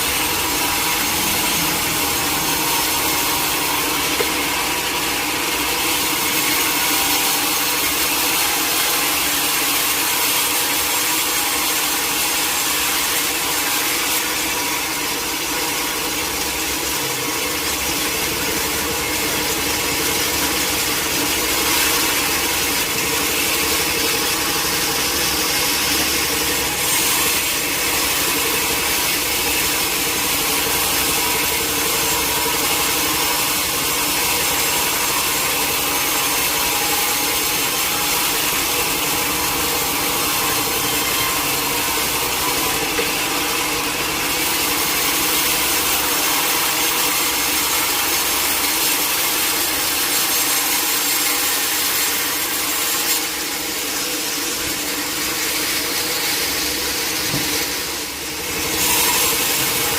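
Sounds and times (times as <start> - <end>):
machine hum: 0.0 - 47.7
saw cutting through log: 0.0 - 59.9.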